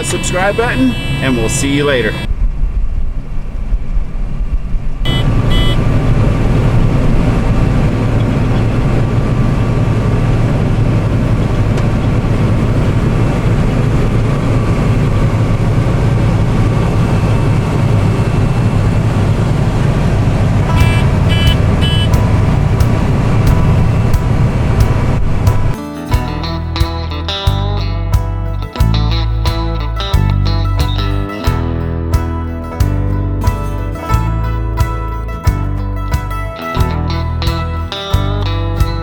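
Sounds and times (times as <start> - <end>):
combine harvester drone: 0.0 - 2.3, 5.1 - 39.0
short high-pitched beeps: 5.1 - 5.9, 20.7 - 22.3.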